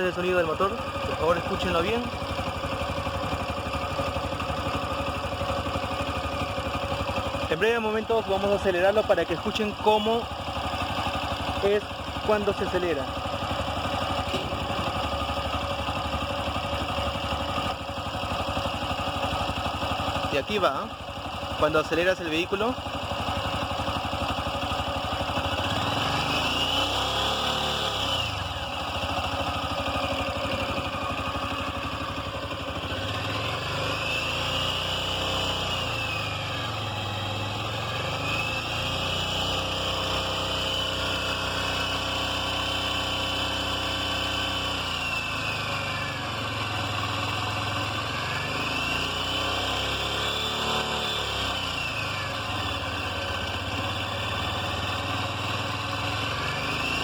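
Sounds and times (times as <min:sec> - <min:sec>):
engine revving: 0:21.6 - 0:29.7, 0:32.8 - 0:57.0.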